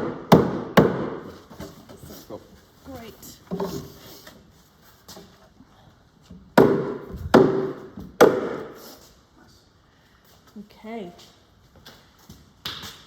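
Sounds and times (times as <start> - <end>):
heavy blows on wooden panel: 6.4 - 8.8.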